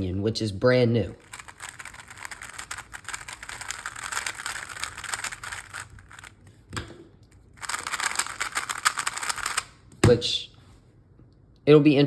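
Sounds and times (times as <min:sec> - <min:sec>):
puzzle cube plastic clicks: 0:01.2 - 0:06.4, 0:07.6 - 0:09.8.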